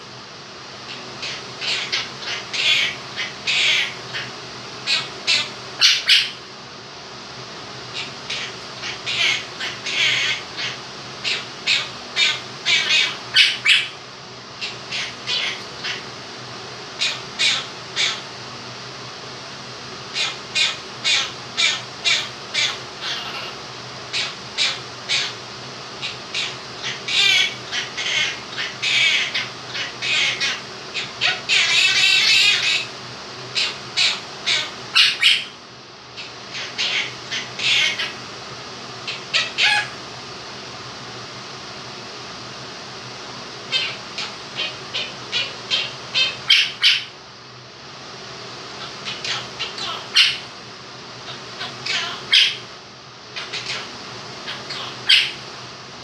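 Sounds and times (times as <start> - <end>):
electric fan humming: 0.0 - 56.0
parrot squawking and chattering: 0.9 - 6.4, 7.9 - 14.0, 14.6 - 16.2, 17.0 - 18.3, 20.1 - 25.4, 26.0 - 32.9, 33.6 - 35.6, 36.2 - 38.3, 39.0 - 40.0, 43.6 - 47.2, 48.8 - 50.5, 51.3 - 52.7, 53.4 - 55.4.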